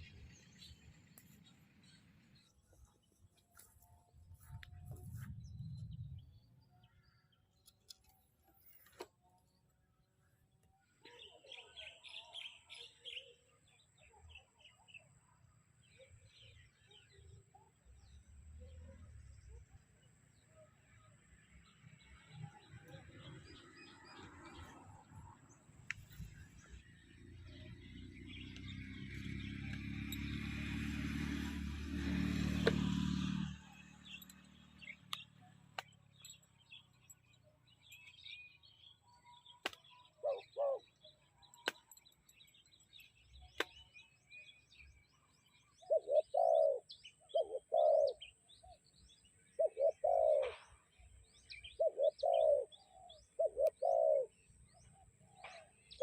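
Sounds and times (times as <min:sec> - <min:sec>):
forest birdsong chirps: 0:00.0 - 0:56.0
dove cooing: 0:40.2 - 0:40.9, 0:45.8 - 0:48.3, 0:49.6 - 0:50.6, 0:51.6 - 0:54.3.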